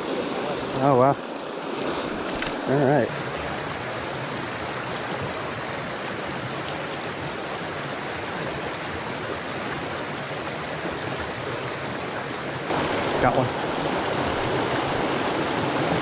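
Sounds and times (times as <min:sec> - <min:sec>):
stream rushing over rocks: 0:03.1 - 0:13.1.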